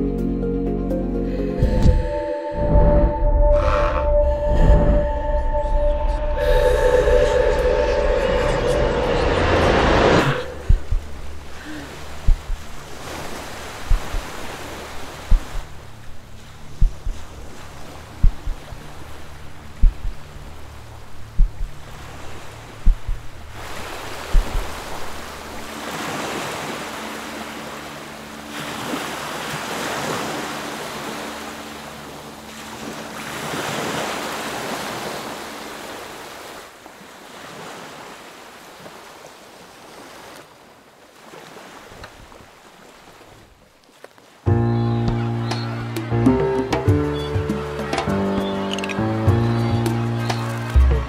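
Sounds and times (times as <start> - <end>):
ocean waves washing: 1.4 - 51.0
wind on microphone: 1.6 - 25.7.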